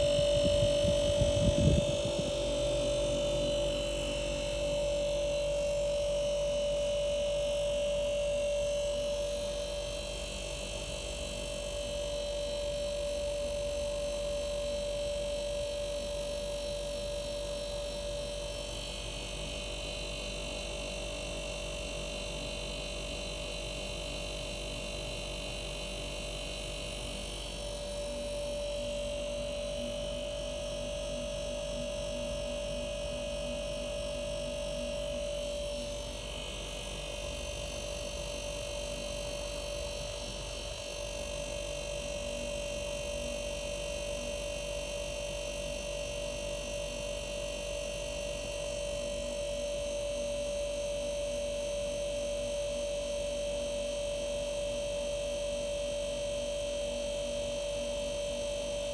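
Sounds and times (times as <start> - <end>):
refrigerator compressor humming: 0.0 - 11.1, 24.4 - 47.9.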